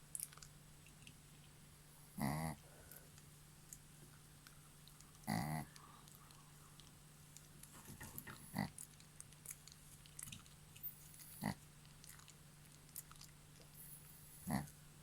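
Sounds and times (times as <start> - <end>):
snack being chewed: 0.1 - 1.5, 2.9 - 14.8
snoring snorts: 2.2 - 2.6.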